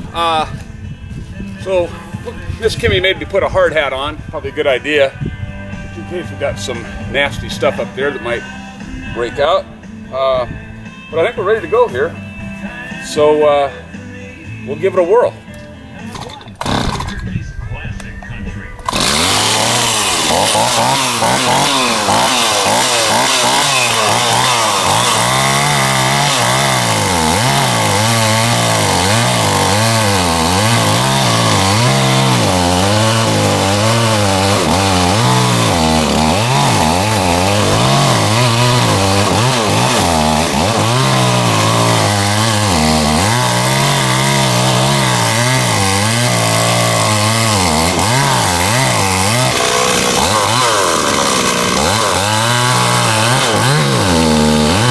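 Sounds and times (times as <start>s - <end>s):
chainsaw cutting wood: 16.0s - 17.2s, 18.8s - 54.9s.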